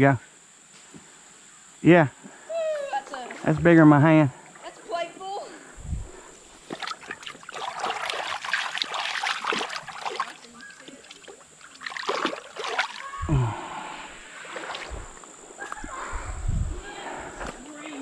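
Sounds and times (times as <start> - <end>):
water splashing in creek: 6.0 - 15.9.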